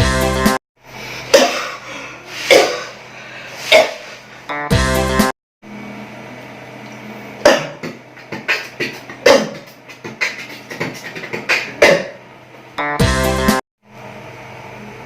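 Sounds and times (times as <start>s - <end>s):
person coughing: 1.3s - 3.0s, 3.6s - 4.2s, 7.4s - 8.0s, 9.1s - 9.7s, 11.6s - 12.2s.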